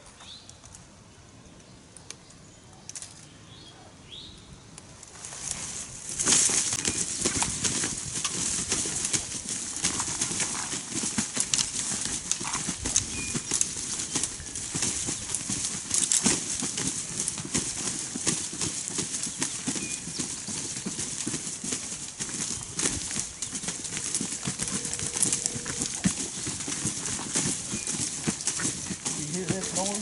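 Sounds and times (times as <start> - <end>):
turkey wings beating in dry leaves: 5.1 - 30.0.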